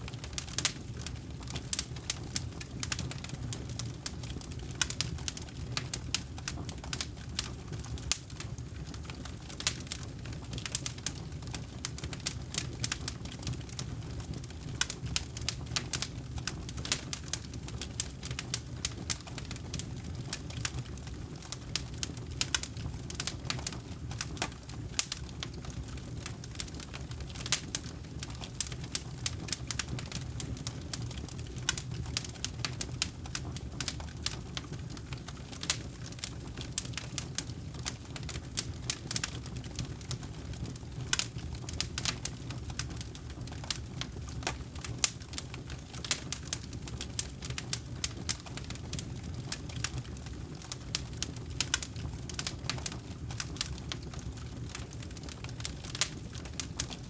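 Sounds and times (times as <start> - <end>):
campfire crackling and popping: 0.0 - 57.0
low rumble of flames: 0.0 - 57.0.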